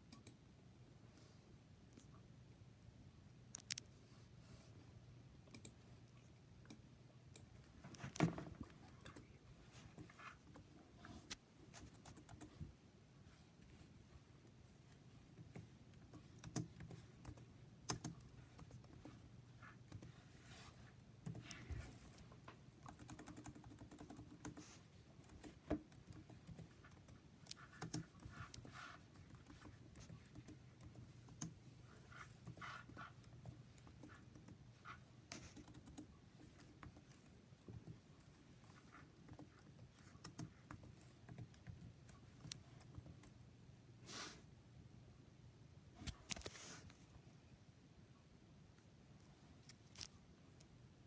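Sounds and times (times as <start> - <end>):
faint clicks and taps: 21.3 - 43.4.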